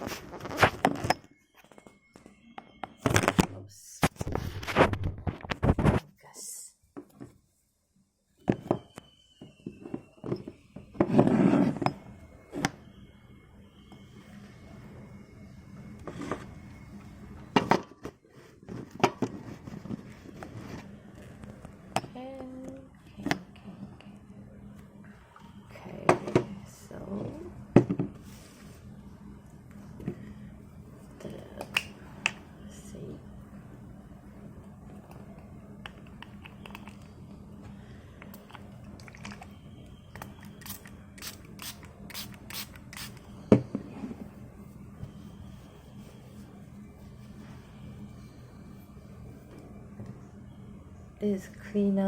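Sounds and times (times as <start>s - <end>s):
spray bottle spritzing: 40.6s - 43.2s.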